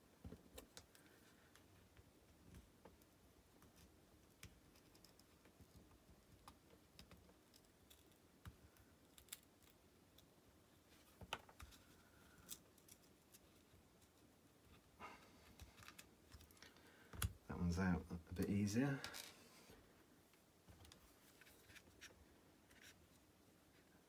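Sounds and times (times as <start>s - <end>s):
small clicks and scrapes: 0.3s - 10.3s, 10.9s - 17.4s, 20.7s - 23.2s.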